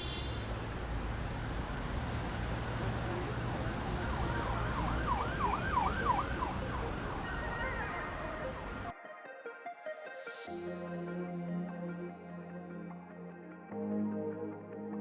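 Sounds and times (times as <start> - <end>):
low traffic rumble: 0.0 - 8.9
siren warbling: 3.5 - 8.9.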